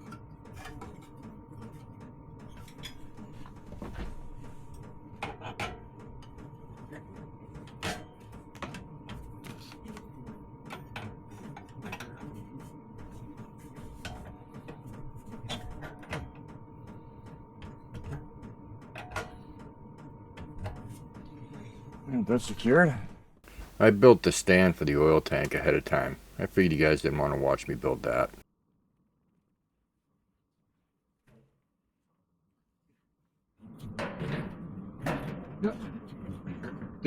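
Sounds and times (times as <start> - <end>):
faint steady hum: 23.5 - 28.4.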